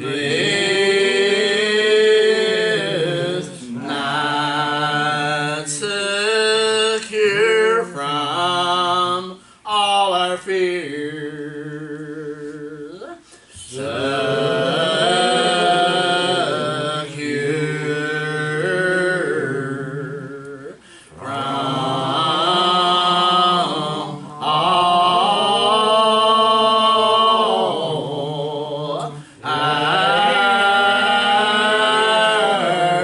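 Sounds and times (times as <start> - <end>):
congregation singing a hymn: 0.0 - 33.0.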